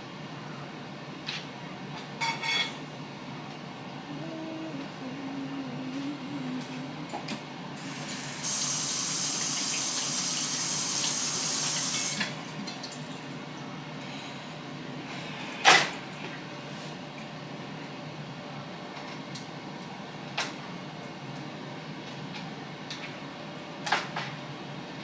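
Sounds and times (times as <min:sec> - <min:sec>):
kitchen tap running: 0:07.8 - 0:13.1.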